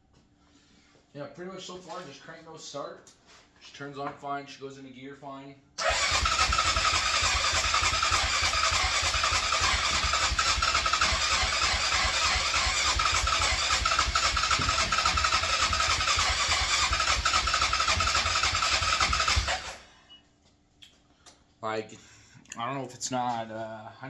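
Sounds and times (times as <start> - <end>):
engine cranking with starter: 5.8 - 19.9.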